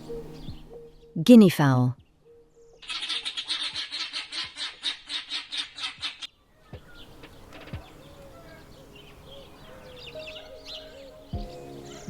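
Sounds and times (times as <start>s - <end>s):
guineafowl harsh chatter: 2.8s - 6.3s.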